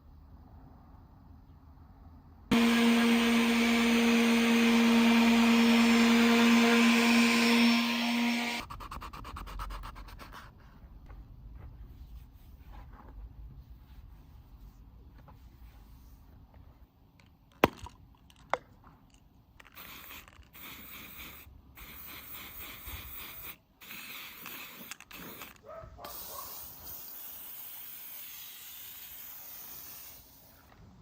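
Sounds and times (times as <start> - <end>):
hissing spray: 19.8 - 30.7.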